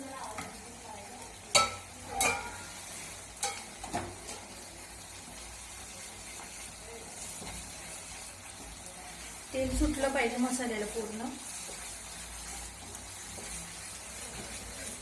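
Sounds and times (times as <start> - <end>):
gravy sizzling in oil: 0.0 - 15.0
spoon knocking against pan: 1.5 - 2.6.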